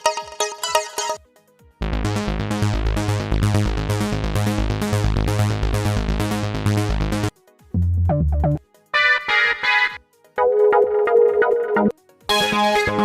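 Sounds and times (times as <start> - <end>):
synthesizer pattern of fast notes: 0.0 - 1.2, 1.8 - 9.6, 10.4 - 13.0
pulsing synth bass: 1.8 - 8.6.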